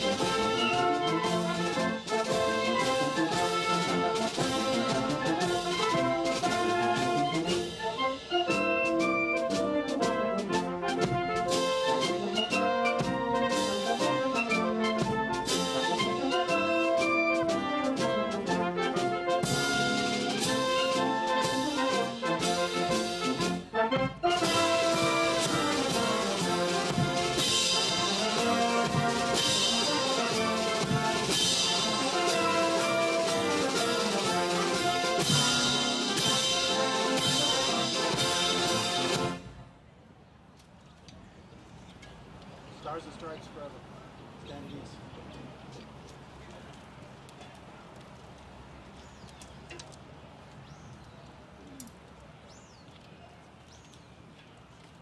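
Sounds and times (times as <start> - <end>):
brass band playing: 0.0 - 39.8
drums: 0.0 - 39.9
outdoor background noise: 0.0 - 55.0
bird chirping: 48.8 - 54.8.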